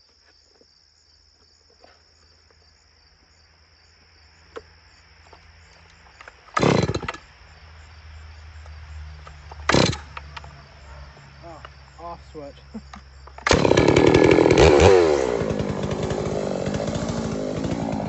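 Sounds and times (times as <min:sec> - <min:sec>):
crickets chirping: 0:00.0 - 0:13.5
chainsaw engine running: 0:06.6 - 0:07.2, 0:09.7 - 0:10.3, 0:13.4 - 0:18.0.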